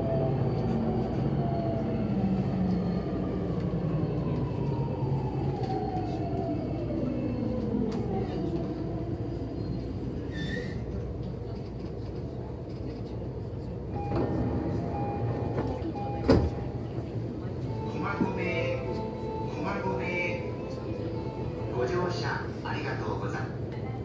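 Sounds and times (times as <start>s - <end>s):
brief high squeak: 10.3s - 10.8s.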